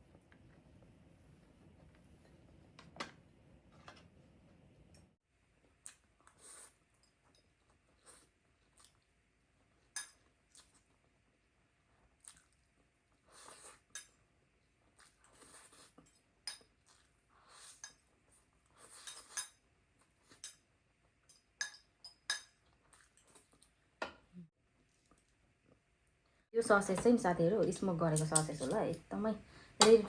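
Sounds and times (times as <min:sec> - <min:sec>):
chewing food: 0:05.6 - 0:11.2, 0:12.0 - 0:16.0.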